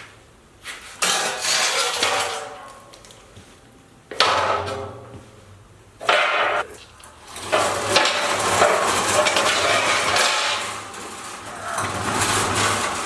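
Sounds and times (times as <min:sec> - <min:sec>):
metal clank: 0:04.1 - 0:05.3, 0:06.0 - 0:06.7
metal rattling and scraping: 0:06.0 - 0:13.0.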